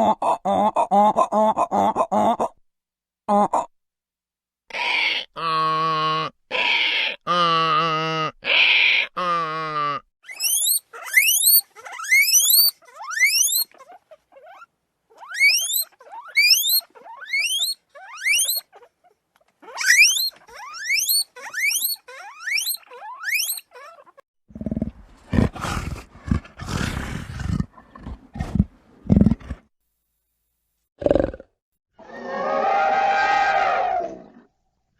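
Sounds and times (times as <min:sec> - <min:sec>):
rising whistle-like animal calls: 0:32.0 - 0:34.2.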